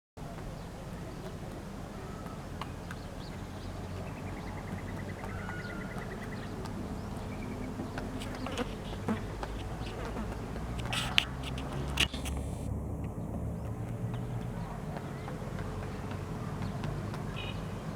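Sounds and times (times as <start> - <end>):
bird trilling and chirping: 2.0 - 12.7.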